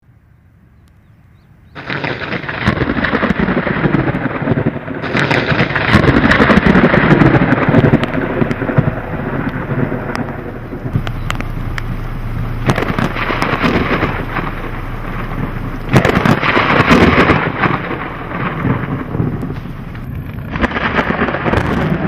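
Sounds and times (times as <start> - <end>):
rain: 1.7 - 22.0
thunder rumbling and crackling: 1.7 - 22.0.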